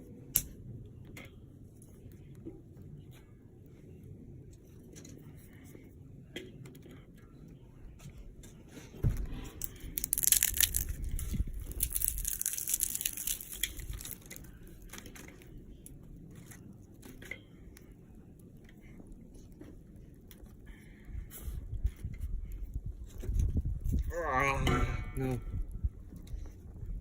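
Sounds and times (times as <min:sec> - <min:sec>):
thump: 0:09.0 - 0:09.5
wind buffeting microphone: 0:09.0 - 0:14.9, 0:20.6 - 0:27.0
twigs and bark crunching: 0:09.3 - 0:17.9.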